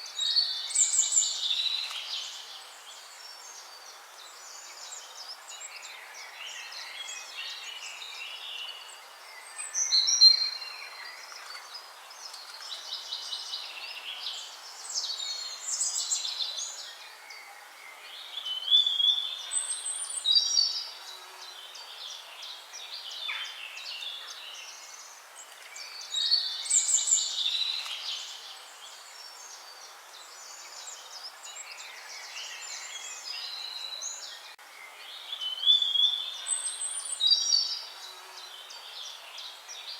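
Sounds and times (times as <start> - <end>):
birds singing and chirping: 4.5 - 39.9.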